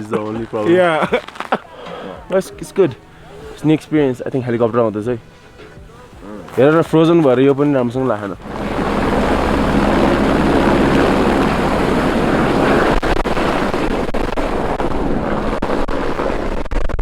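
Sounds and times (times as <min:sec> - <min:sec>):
helicopter rotor and engine drone: 0:03.0 - 0:16.3.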